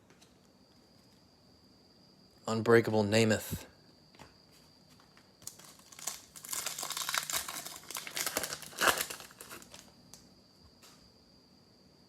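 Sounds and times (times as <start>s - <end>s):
wrapper tearing and crinkling: 5.4s - 9.9s.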